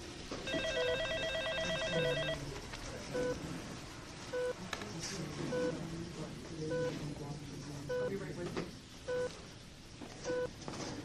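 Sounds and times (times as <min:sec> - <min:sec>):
electronic telephone ringing: 0:00.5 - 0:02.4.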